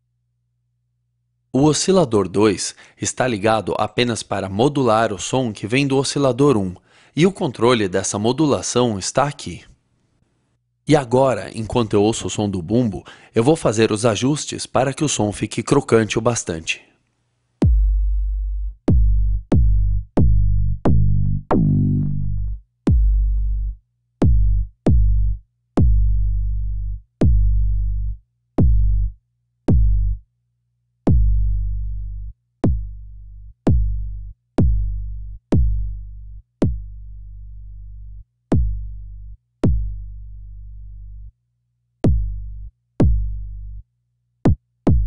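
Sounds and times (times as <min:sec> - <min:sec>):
synthesized kick drum hits: 0:17.6 - 0:29.1, 0:29.7 - 0:30.2, 0:31.1 - 0:32.0, 0:32.6 - 0:33.0, 0:33.7 - 0:36.0, 0:36.6 - 0:37.0, 0:38.5 - 0:40.1, 0:42.1 - 0:43.6, 0:44.5 - 0:45.0.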